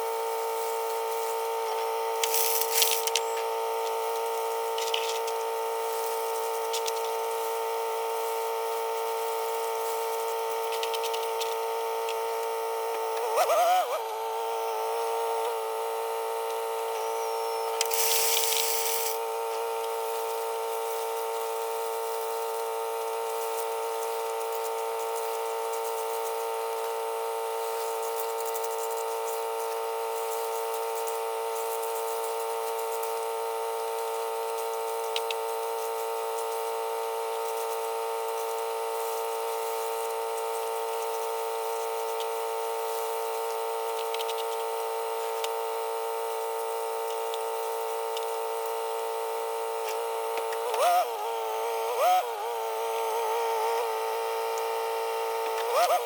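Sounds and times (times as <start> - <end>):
hydraulic pump whining: 12.9 - 15.8, 49.8 - 56.0.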